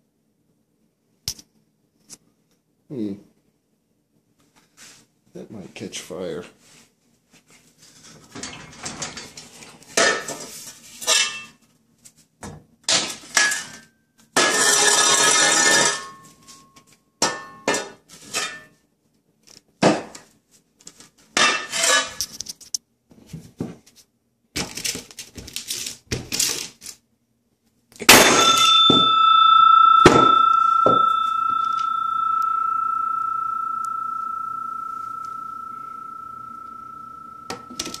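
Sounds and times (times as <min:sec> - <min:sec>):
ringing metallic strike: 0:28.1 - 0:38.0.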